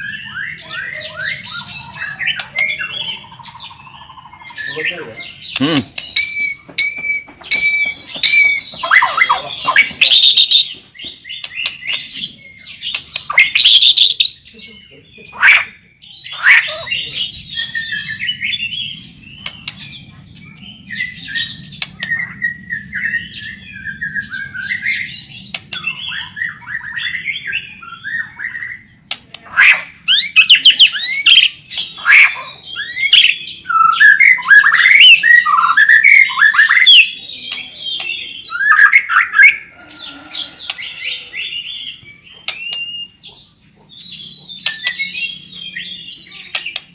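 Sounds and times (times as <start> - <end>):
bird singing whistled song: 0.0 - 14.5, 16.0 - 19.6, 30.1 - 39.6, 40.6 - 43.2, 44.2 - 46.8.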